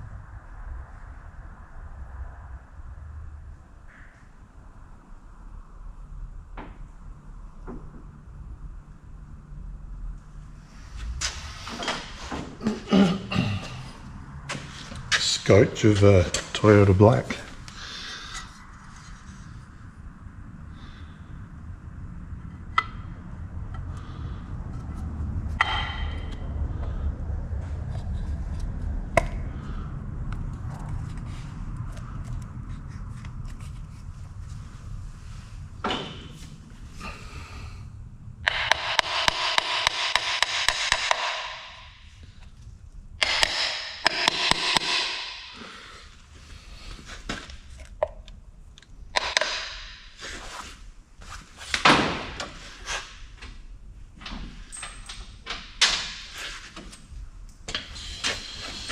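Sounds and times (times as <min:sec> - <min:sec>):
steady low rumble: 0:00.0 - 0:40.2, 0:41.1 - 0:54.4
sharp knock: 0:38.5 - 0:41.9, 0:43.2 - 0:45.6.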